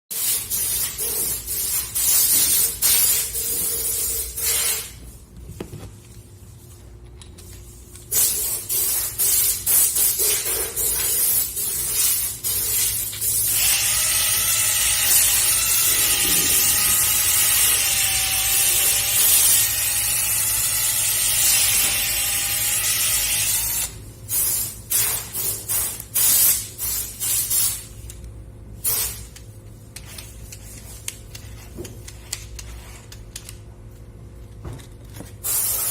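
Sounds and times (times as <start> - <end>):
drill sanding hiss: 13.5 - 23.9
drill motor whine: 13.6 - 23.9.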